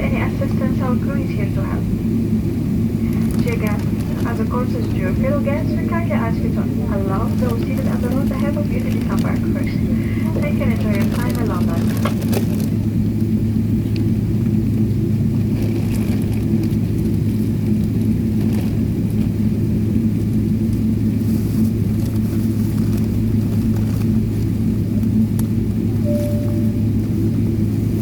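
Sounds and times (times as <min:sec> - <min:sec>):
airplane cabin drone: 0:00.0 - 0:28.0.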